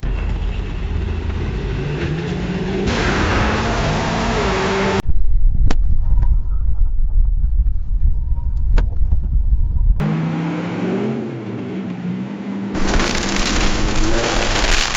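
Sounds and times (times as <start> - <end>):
droning car sound: 0.0 - 5.1
car crash impact and rumble: 12.8 - 14.9.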